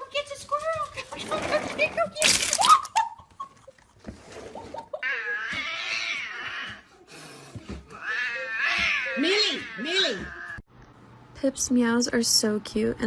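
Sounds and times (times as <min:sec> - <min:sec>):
cat meowing: 0:07.9 - 0:10.6.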